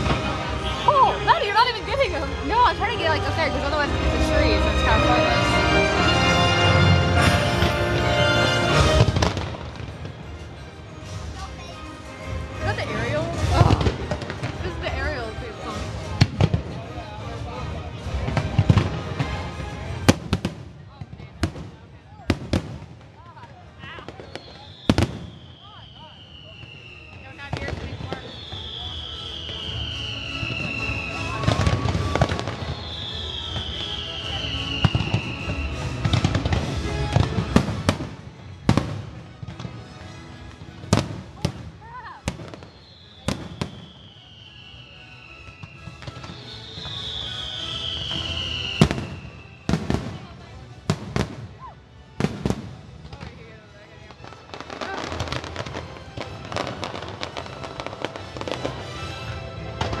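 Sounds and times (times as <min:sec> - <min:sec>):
music soundtrack: 0:00.0 - 0:20.8, 0:28.6 - 1:00.0
fireworks bursting and crackling: 0:00.0 - 1:00.0
falling firework whistles: 0:24.1 - 0:36.6, 0:42.3 - 0:50.0.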